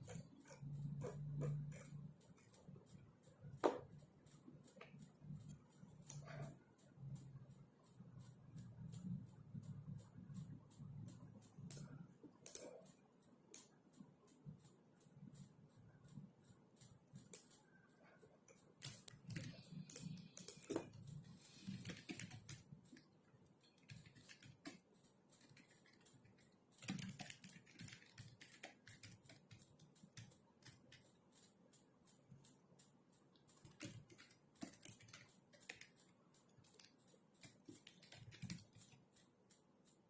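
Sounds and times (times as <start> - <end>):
typing on computer keyboard: 0.0 - 40.0.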